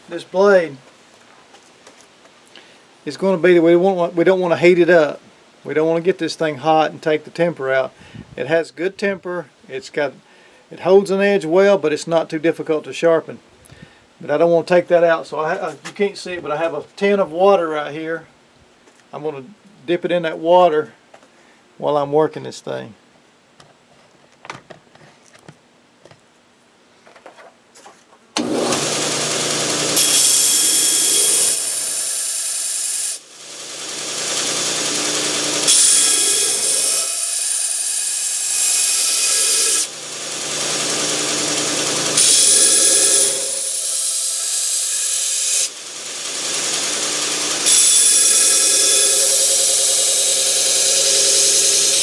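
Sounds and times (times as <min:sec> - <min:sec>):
belt sander running: 0:28.4 - 0:52.0
knife blade grinding hiss: 0:30.0 - 0:33.2, 0:35.6 - 0:40.0, 0:42.1 - 0:45.8, 0:46.4 - 0:52.0.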